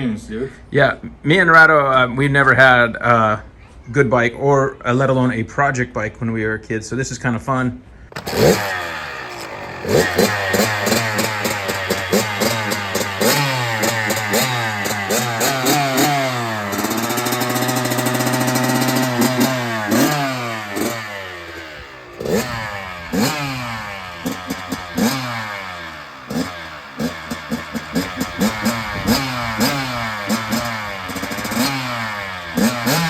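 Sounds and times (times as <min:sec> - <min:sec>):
motorcycle engine revving: 0:08.1 - 0:33.0.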